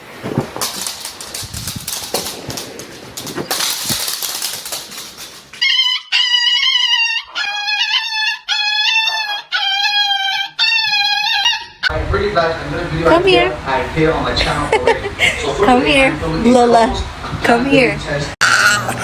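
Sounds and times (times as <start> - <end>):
rustling and scuffling: 0.0 - 5.7
dog wailing: 5.5 - 11.9.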